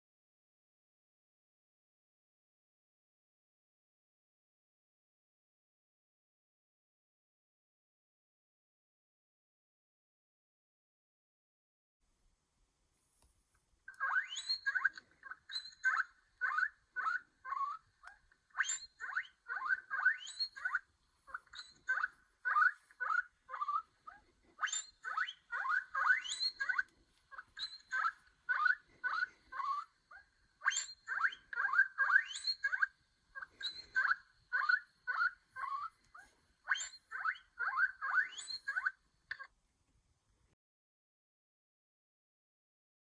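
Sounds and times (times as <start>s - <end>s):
guinea pig squealing: 13.9s - 39.5s.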